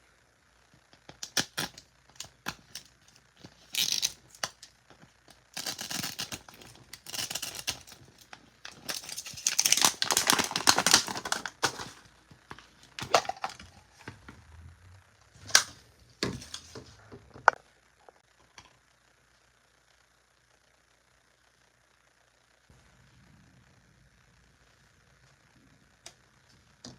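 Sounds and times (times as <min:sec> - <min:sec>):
plastic packaging crinkling: 0:01.2 - 0:04.7, 0:05.3 - 0:14.1.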